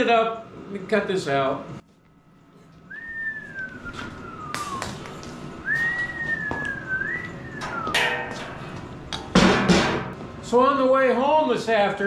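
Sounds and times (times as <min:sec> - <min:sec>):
person whistling sliding notes: 0:02.9 - 0:05.0, 0:05.6 - 0:08.0.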